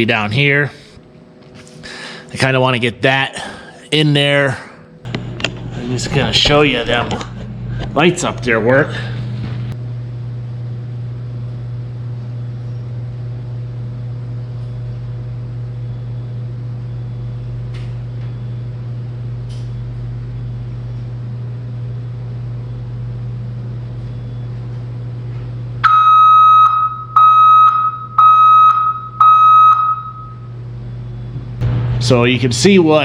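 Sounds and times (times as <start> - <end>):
backup alarm beeps: 25.8 - 31.4.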